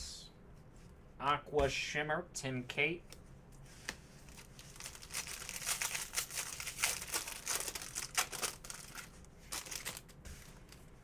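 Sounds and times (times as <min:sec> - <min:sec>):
plastic wrapper tearing and crinkling: 0:04.3 - 0:10.2.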